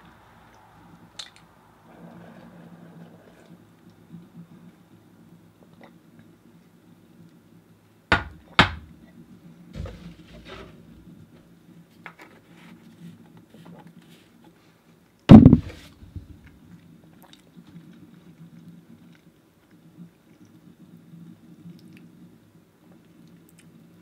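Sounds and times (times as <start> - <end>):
loud knock: 15.3 - 15.8.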